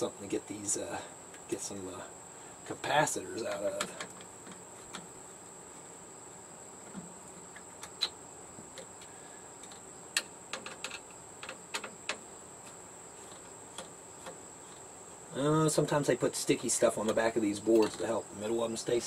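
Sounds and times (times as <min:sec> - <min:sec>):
clicks and taps of tools: 0:03.5 - 0:05.1, 0:07.6 - 0:12.2.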